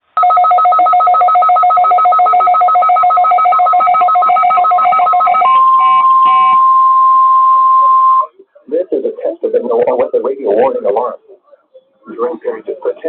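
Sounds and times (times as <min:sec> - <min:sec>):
steady alarm tone: 0:00.2 - 0:08.3.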